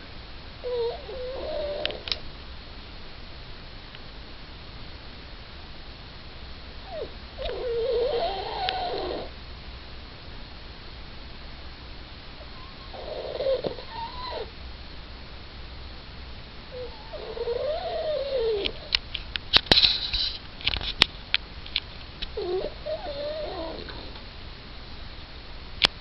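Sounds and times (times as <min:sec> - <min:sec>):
dog whining: 0:00.6 - 0:02.2, 0:06.8 - 0:09.3, 0:12.4 - 0:14.5, 0:16.7 - 0:19.0, 0:22.4 - 0:24.2.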